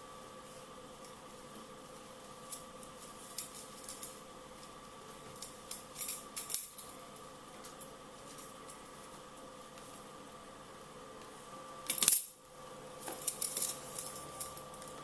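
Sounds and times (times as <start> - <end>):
wire scraping and clicking: 2.3 - 10.0, 11.2 - 12.4, 13.0 - 15.0.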